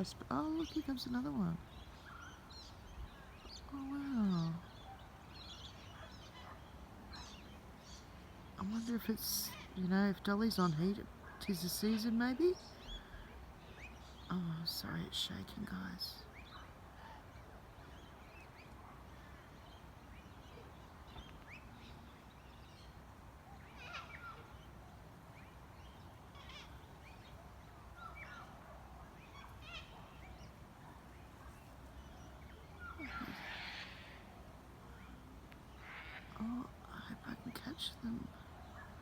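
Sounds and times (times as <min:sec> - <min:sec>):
cockatoos calling: 0:23.5 - 0:36.4.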